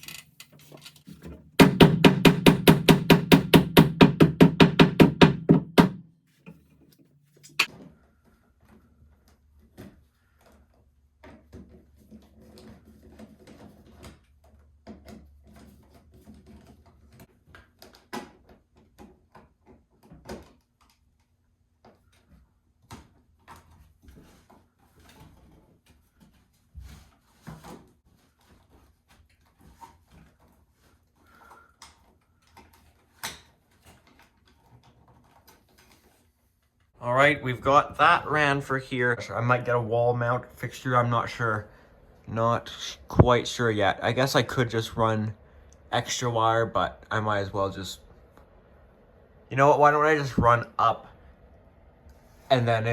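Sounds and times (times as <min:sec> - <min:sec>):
electrical cable handling: 0:00.0 - 0:01.6.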